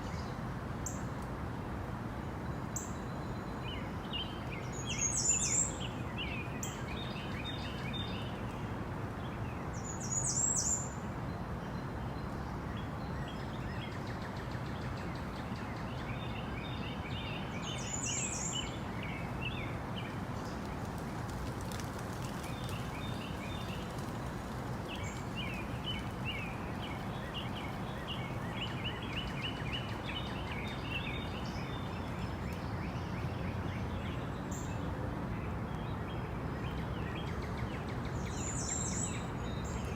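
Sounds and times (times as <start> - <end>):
steady background hiss: 0.0 - 39.9.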